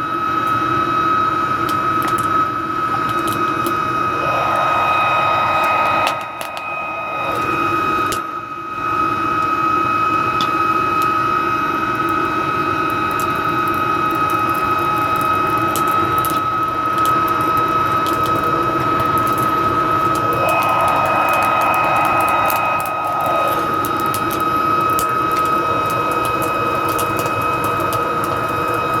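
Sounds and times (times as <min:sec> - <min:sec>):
furnace roaring: 0:01.4 - 0:09.4, 0:19.1 - 0:29.0
high motor whine: 0:04.0 - 0:08.9, 0:20.2 - 0:24.9.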